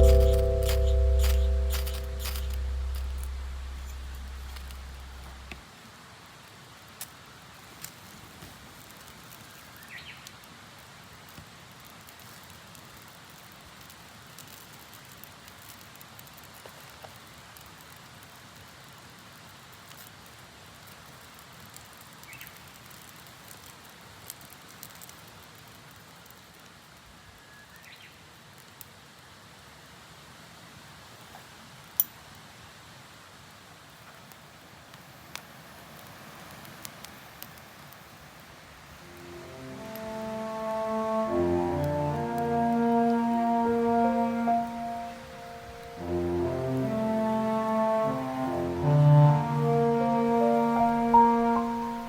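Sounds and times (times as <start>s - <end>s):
small fire crackling: 4.2s - 41.2s.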